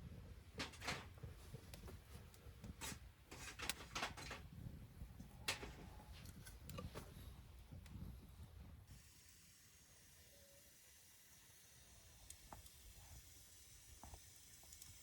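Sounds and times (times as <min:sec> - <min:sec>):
objects being handled: 0:02.7 - 0:04.6.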